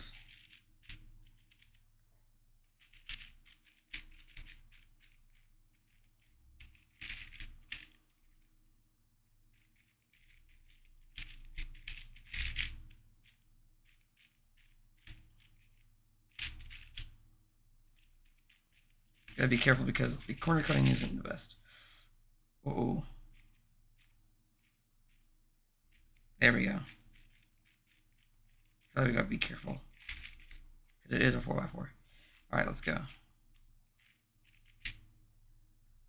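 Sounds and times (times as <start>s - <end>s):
puzzle cube clicking and rattling: 0.0s - 1.9s, 2.7s - 8.5s, 9.5s - 17.2s, 17.9s - 21.3s, 23.2s - 25.2s, 25.9s - 35.1s.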